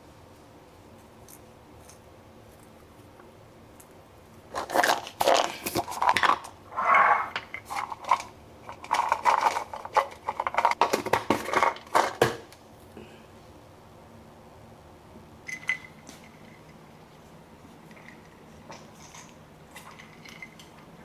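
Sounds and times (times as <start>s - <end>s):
small hard objects clattering: 4.5s - 12.4s.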